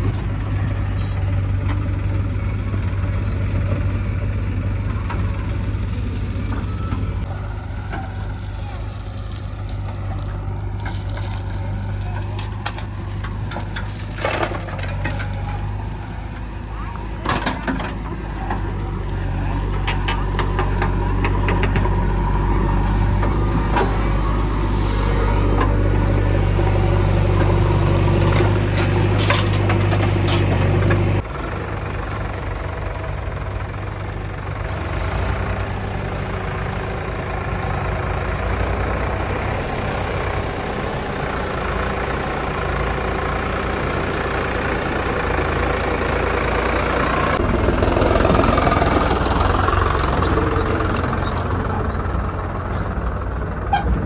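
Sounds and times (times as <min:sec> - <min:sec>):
diesel machinery engine running: 0:00.0 - 0:54.0.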